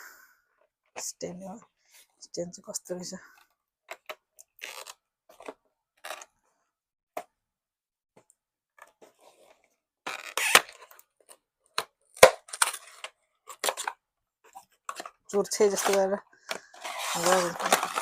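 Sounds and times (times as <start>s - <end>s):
packaging rustling: 14.8s - 18.0s.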